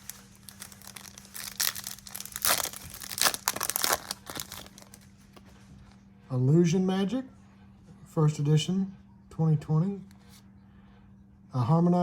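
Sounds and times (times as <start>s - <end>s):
foil wrapper tearing and crinkling: 0.0s - 5.1s.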